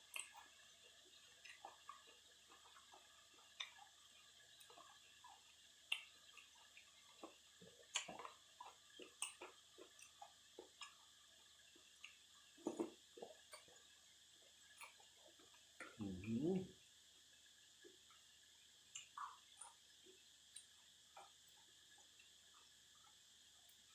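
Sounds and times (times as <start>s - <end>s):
chewing noodles mouth smacks: 0.1s - 4.0s, 4.6s - 11.0s, 12.0s - 13.8s.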